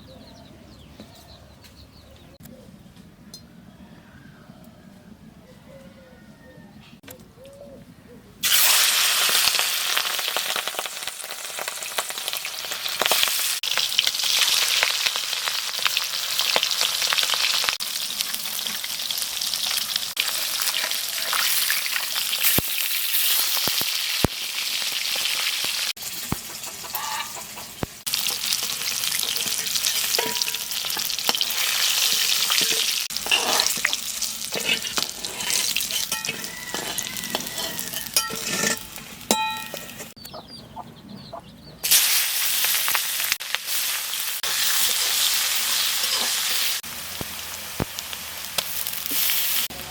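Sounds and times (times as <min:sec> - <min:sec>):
food sizzling in oil: 0:08.4 - 0:40.2, 0:41.8 - 0:49.9.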